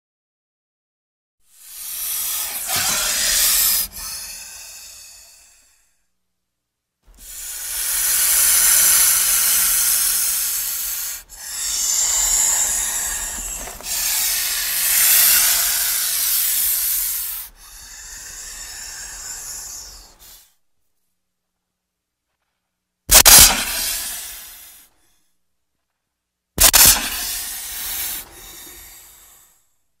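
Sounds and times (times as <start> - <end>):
snake hissing: 1.5 - 6.0, 7.1 - 20.6, 23.1 - 24.9, 26.6 - 29.6.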